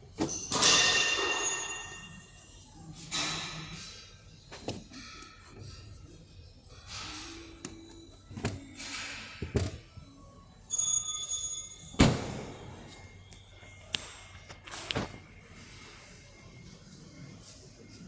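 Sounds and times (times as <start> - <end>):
music from a radio: 12.7 - 18.0.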